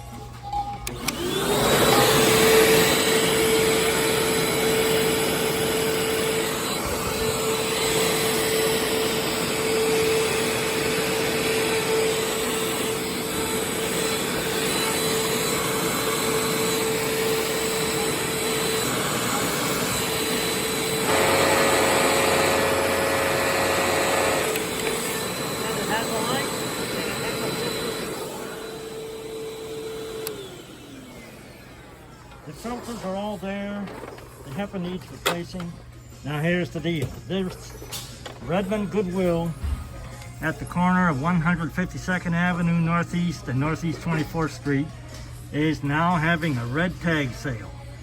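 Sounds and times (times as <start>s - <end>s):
vacuum cleaner motor whine: 0.0s - 35.7s.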